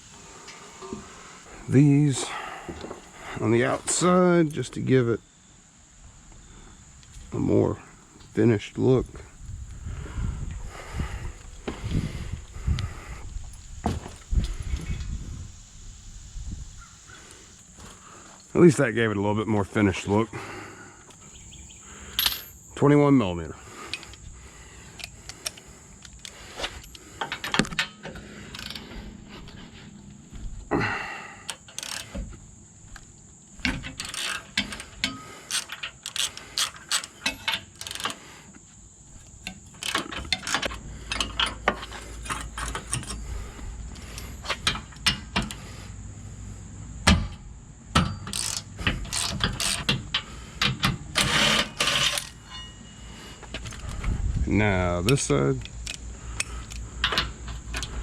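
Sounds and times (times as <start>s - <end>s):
metal clinks: 21.4s - 23.3s, 51.8s - 53.1s
socket ratchet clicking: 31.5s - 32.1s, 34.0s - 38.2s, 48.2s - 52.4s.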